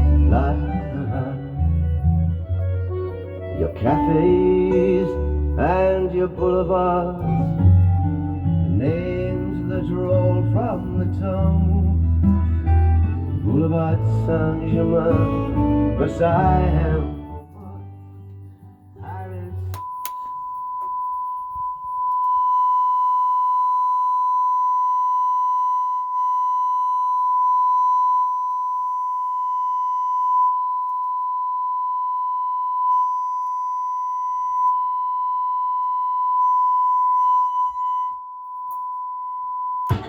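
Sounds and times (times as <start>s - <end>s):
steady test tone: 19.0s - 40.0s.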